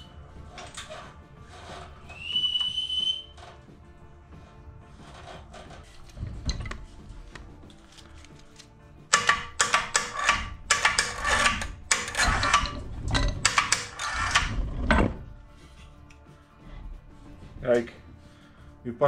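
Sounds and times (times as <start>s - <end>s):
background music: 0.0s - 19.0s
angle grinder grinding metal: 9.1s - 15.2s.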